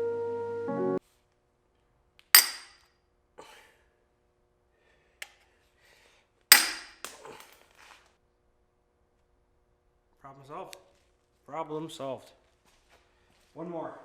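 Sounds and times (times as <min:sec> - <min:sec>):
hammer striking chisel on metal: 0:02.4 - 0:02.7, 0:06.5 - 0:07.0.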